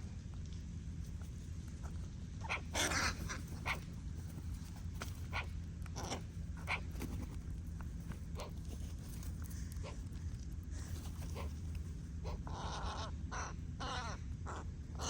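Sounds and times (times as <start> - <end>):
crows calling harshly: 2.4 - 3.8, 5.3 - 6.9, 12.2 - 15.0.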